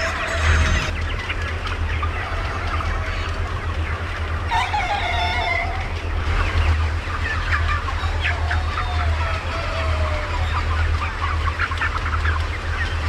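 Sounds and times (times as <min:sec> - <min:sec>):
chickens clucking and calling: 0:00.0 - 0:13.0.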